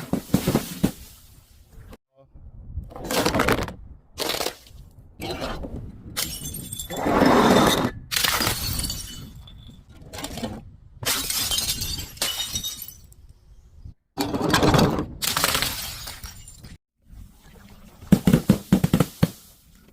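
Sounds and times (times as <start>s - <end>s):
glass bottles shattering: 6.2s - 7.0s, 8.1s - 9.9s, 11.1s - 13.2s, 15.3s - 16.8s.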